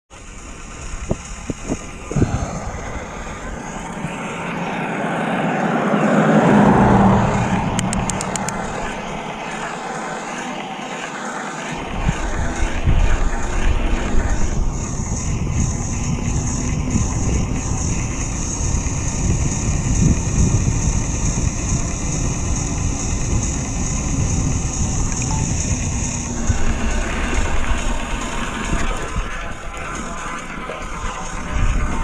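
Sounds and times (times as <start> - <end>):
wind noise: 0.2 - 10.6, 11.7 - 32.0
bike rattling over rough ground: 7.9 - 32.0.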